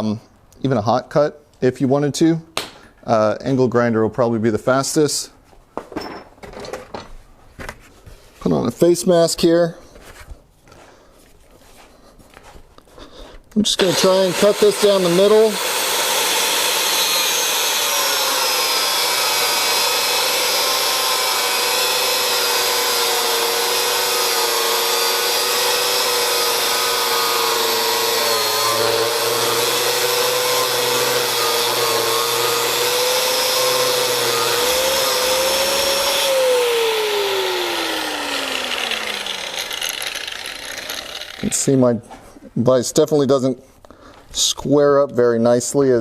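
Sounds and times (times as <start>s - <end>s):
angle grinder cutting steel: 13.7s - 41.8s
grinder winding down: 13.7s - 41.8s.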